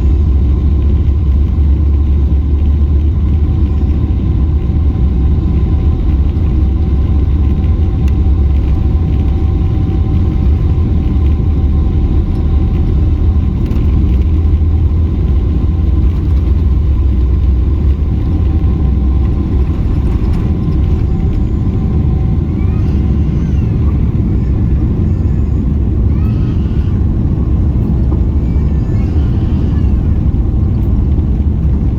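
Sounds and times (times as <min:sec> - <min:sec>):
aircraft cabin engine rumble: 0:00.0 - 0:31.9
faint engine whine: 0:00.0 - 0:31.9.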